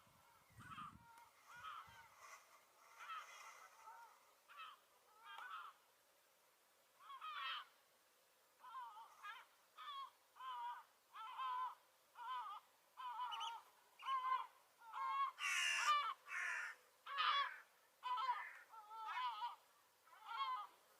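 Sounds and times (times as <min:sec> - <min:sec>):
gull squawking: 0:00.7 - 0:02.1, 0:08.6 - 0:20.8.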